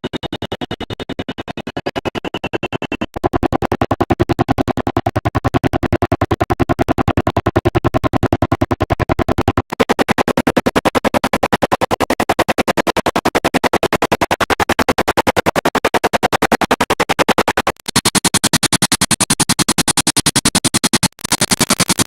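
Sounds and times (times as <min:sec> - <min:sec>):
stuttering background music: 0:17.8 - 0:22.0.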